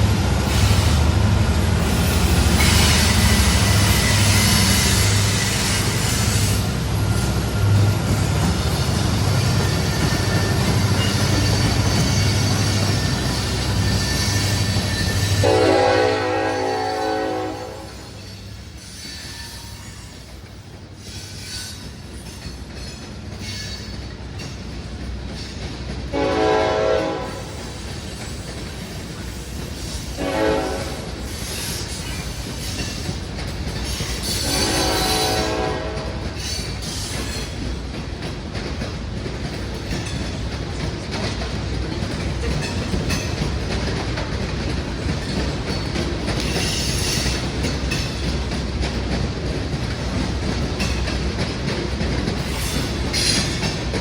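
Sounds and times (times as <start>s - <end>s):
train rumble and wheel clatter: 0.0s - 54.0s
locomotive horn blasts: 15.4s - 18.2s, 26.1s - 27.5s, 30.2s - 31.1s, 34.4s - 36.4s.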